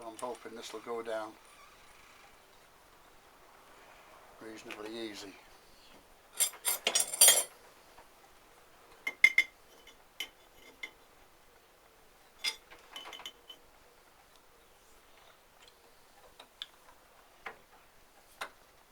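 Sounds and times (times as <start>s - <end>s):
metallic clinks of nut and tools: 6.4s - 7.5s.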